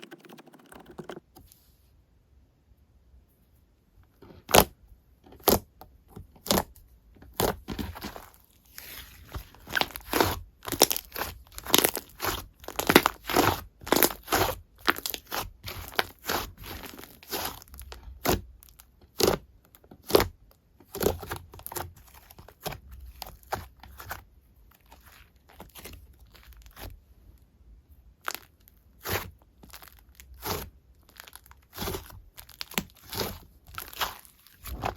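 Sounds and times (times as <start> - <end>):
slime popping and crackling: 9.6 - 18.5, 28.2 - 34.9.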